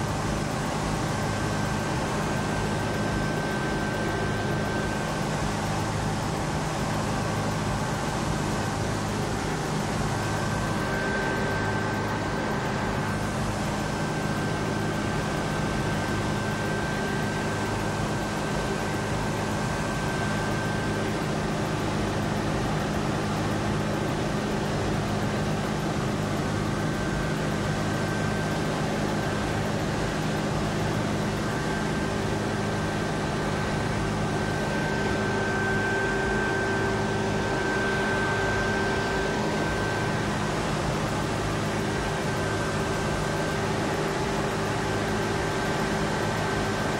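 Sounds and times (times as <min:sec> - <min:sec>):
thin high whine: 0:00.0 - 0:23.8, 0:24.4 - 0:46.9
mechanical drone with low hum: 0:00.0 - 0:46.9.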